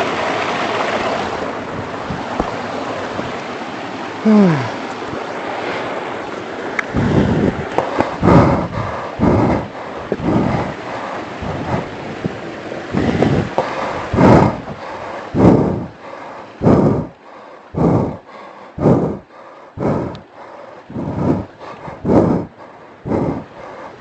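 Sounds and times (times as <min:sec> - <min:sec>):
heavy breathing into microphone: 0:06.9 - 0:24.0.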